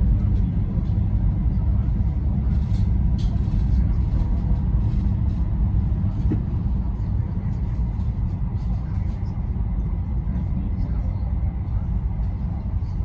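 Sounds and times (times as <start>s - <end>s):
train running low rumble: 0.0s - 13.0s.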